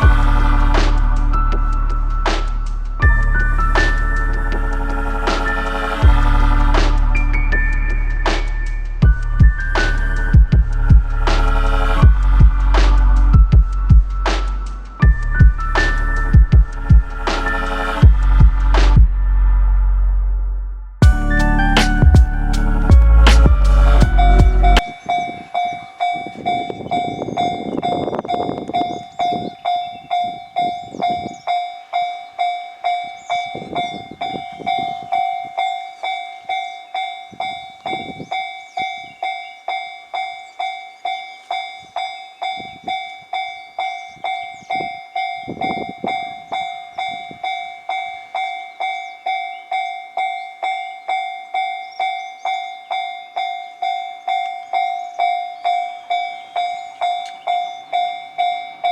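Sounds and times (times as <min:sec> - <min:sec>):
low rushing noise: 0:00.0 - 0:25.6
level-crossing warning bell: 0:21.0 - 0:58.9.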